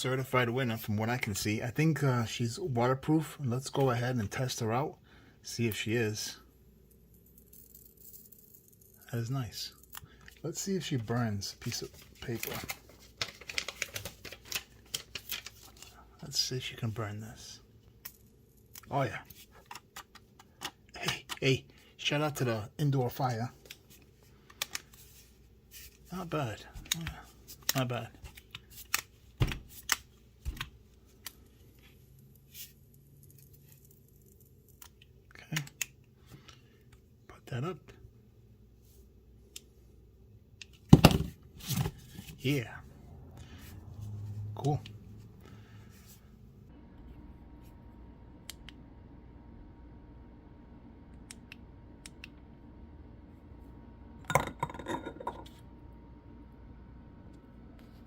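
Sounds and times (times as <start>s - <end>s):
objects clattering and rattling: 54.3s - 55.6s.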